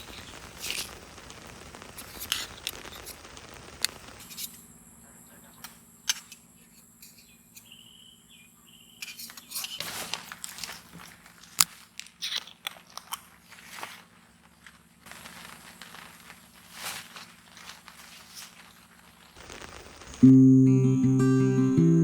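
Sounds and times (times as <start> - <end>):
crunching and rustling handling: 9.1 - 20.1.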